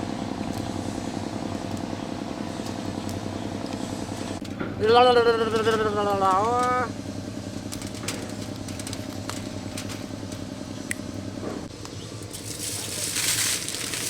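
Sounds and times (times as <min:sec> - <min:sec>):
low engine-like hum: 0:00.0 - 0:14.0
crackling noise: 0:12.3 - 0:14.0.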